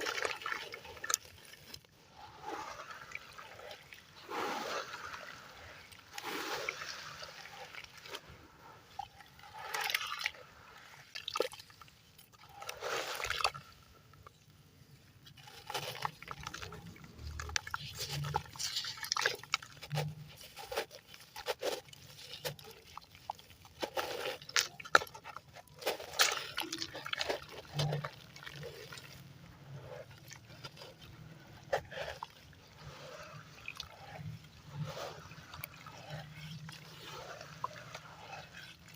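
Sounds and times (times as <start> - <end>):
wet swells: 0.0 - 14.2, 14.8 - 38.9
cement lumps crushed in water: 0.0 - 14.5, 15.2 - 38.9
gritty crackling and crumbling: 15.2 - 38.9.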